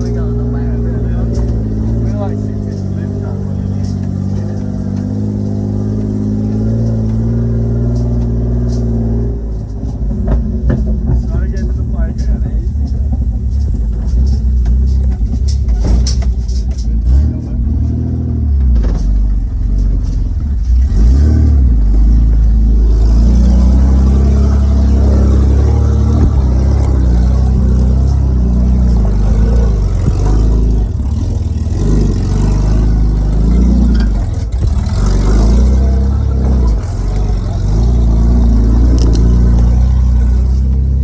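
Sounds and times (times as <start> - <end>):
car engine revving loudly: 0.0 - 16.2, 17.0 - 41.0
sharp knocks: 23.0 - 40.3.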